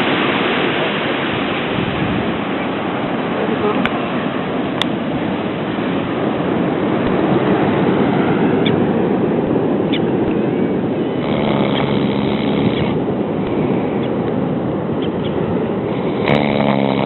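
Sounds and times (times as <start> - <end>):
ocean surf: 0.0 - 17.0
person snoring: 11.2 - 13.0, 16.0 - 17.0.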